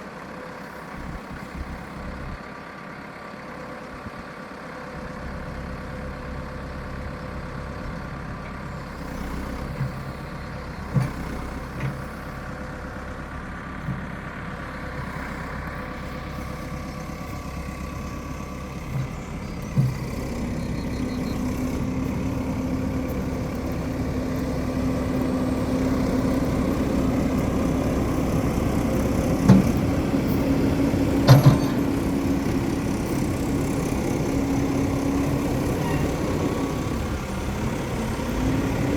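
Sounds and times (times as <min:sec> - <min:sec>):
diesel engine running: 0:00.0 - 0:38.9
short knocks or clunks: 0:31.2 - 0:32.0.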